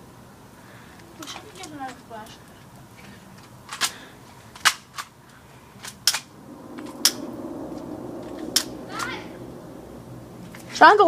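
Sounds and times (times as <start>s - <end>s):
steady low hum: 6.2s - 11.0s.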